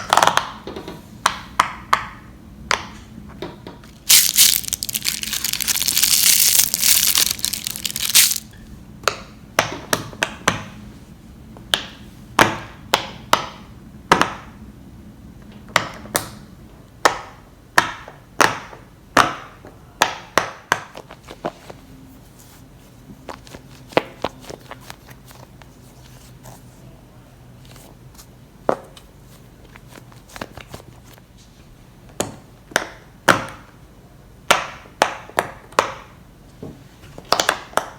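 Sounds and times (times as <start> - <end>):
fidget toy crunching: 3.9 - 8.5
fidget toy snaps and clicks: 4.1 - 8.5.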